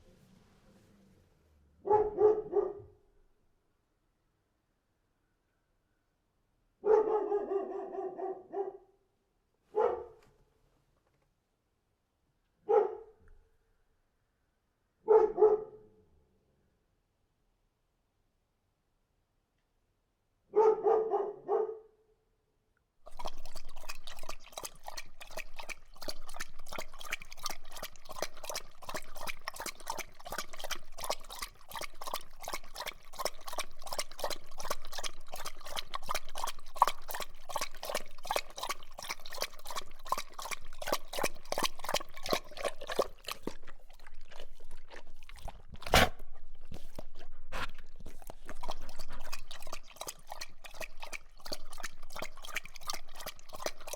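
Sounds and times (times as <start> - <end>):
dog barking: 1.8 - 3.0, 6.8 - 9.0, 9.7 - 10.3, 12.6 - 13.2, 15.0 - 16.0, 20.5 - 22.0
dog lapping water: 23.0 - 53.9.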